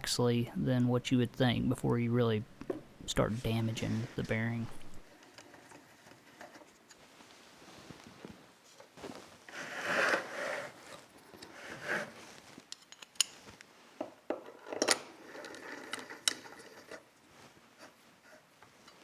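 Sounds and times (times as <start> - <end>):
metal parts scraping and sliding: 5.0 - 7.0, 9.5 - 13.6, 14.3 - 17.2
metallic clicks and clinks: 12.7 - 13.4.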